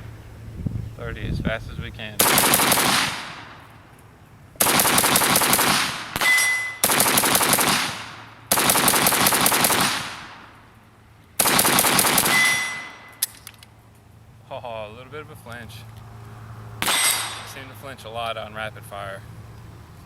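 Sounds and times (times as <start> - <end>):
rapid rifle fire with echo: 2.2 - 3.6, 4.6 - 10.6, 11.4 - 13.0.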